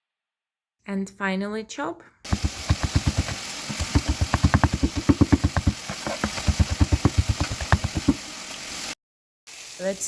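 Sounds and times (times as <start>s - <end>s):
knife chopping on cutting board: 2.3s - 8.2s
chicken sizzling in a pan: 2.3s - 10.0s.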